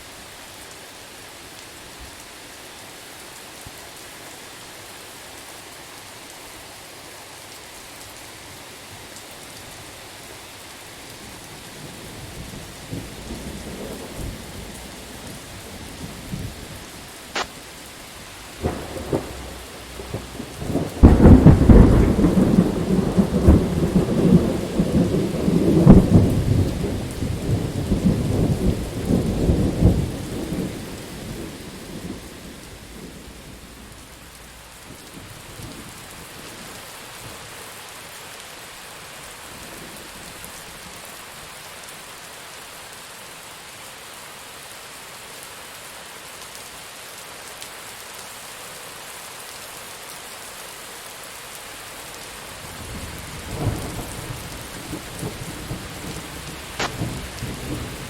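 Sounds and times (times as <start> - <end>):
steady rain: 0.0 - 58.0
thunder rumbling: 18.4 - 36.0, 52.6 - 58.0.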